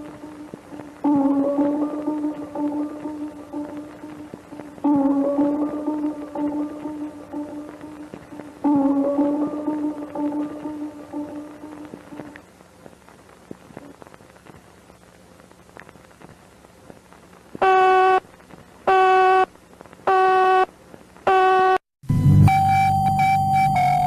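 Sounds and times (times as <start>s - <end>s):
low hiss: 0.0s - 21.8s
buzzy electronic alarm beeps: 21.3s - 24.0s
lower held alert tone: 21.3s - 24.0s.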